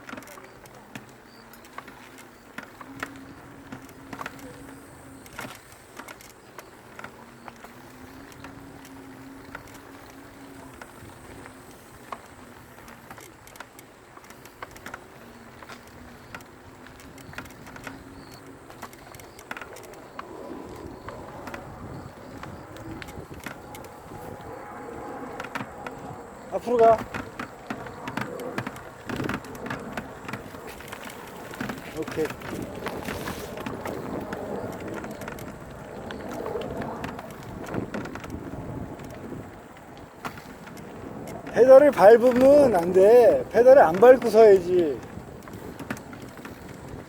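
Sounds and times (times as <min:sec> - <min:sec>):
bicycle tyres on dirt: 0:00.0 - 0:47.0
sharp clicks and rattles: 0:25.2 - 0:39.4, 0:40.2 - 0:47.0.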